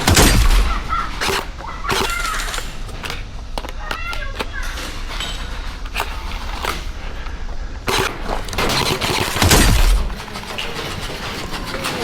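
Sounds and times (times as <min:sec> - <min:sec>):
toy gun firing rapid burst: 0:00.0 - 0:02.9, 0:07.9 - 0:10.5.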